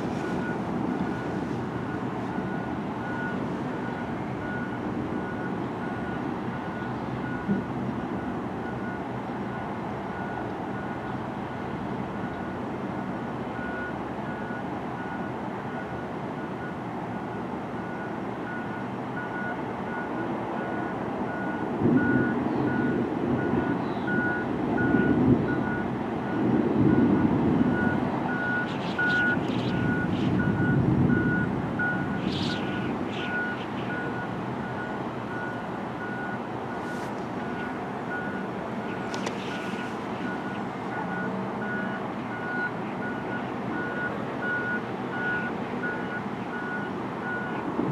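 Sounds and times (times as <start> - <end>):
steady background noise: 0.0 - 47.9
thunder rumbling: 29.3 - 33.1.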